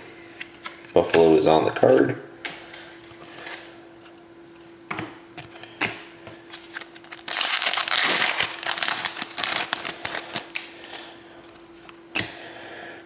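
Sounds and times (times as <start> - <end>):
foil wrapper tearing and crinkling: 6.6 - 10.7.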